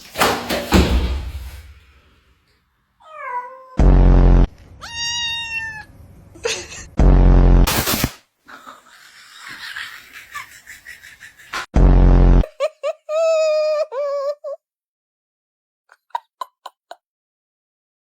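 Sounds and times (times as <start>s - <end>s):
cat meowing and yowling: 3.0s - 3.8s, 4.8s - 5.9s.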